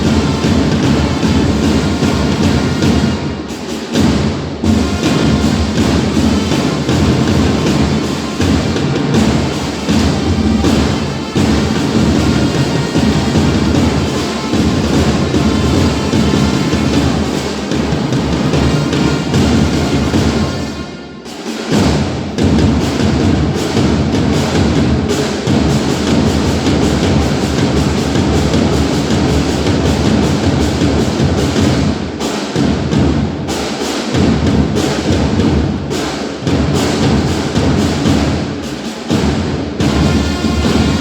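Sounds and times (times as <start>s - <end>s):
loud percussive music: 0.0s - 41.0s.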